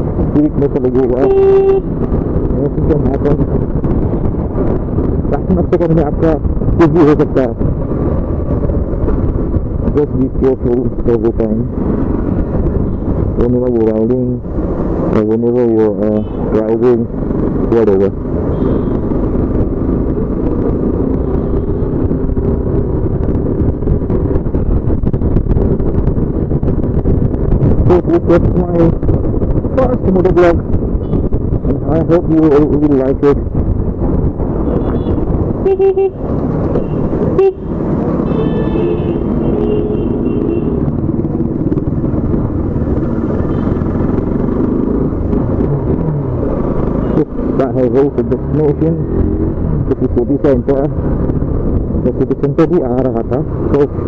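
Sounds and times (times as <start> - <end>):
road noise: 0.0 - 54.0
wind noise: 0.0 - 54.0
long high horn: 1.2 - 1.9, 34.7 - 36.2, 36.8 - 40.8
short horn toots: 1.2 - 1.9
motorcycle engine running: 32.5 - 50.0.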